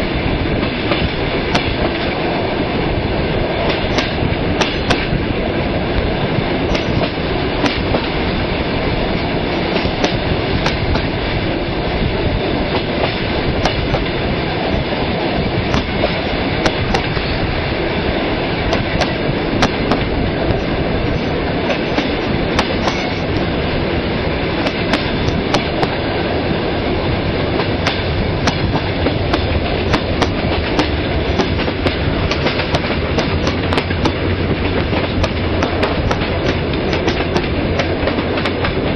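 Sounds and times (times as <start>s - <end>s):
steady rolling rumble: 0.0s - 38.9s
wagon wheels clacking over rail joints: 0.5s - 2.4s, 3.4s - 5.4s, 6.0s - 38.9s
sharp knocks: 15.7s - 17.2s, 18.7s - 20.6s, 21.7s - 23.3s.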